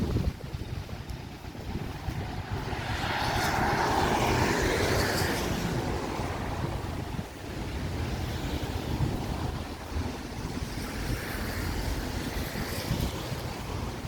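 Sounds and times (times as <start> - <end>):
rushing noise passing by: 0.0 - 14.0
wind rumbling on microphone: 0.0 - 14.0.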